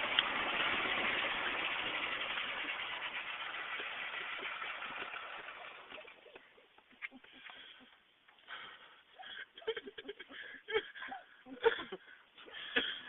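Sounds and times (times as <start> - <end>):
people wheezing gasps: 7.1 - 13.0
bursts of laughter: 9.2 - 13.0.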